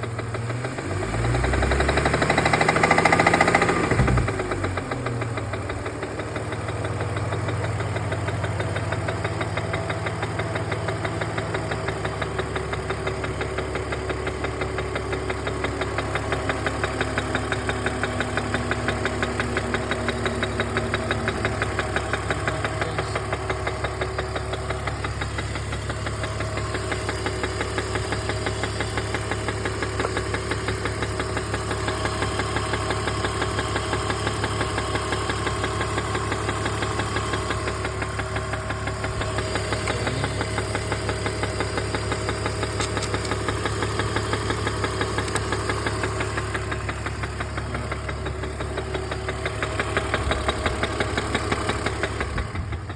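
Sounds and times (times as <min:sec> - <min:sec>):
car engine with tapping knock: 0:00.0 - 0:52.9.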